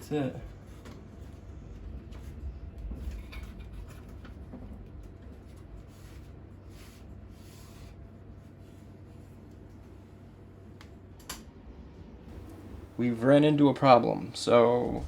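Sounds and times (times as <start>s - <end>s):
steady low hum: 0.0s - 15.0s
cables rustling: 12.3s - 15.0s.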